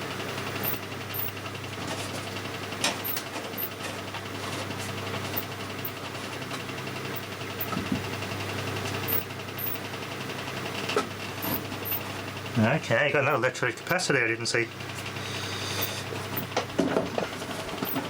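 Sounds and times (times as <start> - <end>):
radio speaker low hum: 12.5 - 16.2.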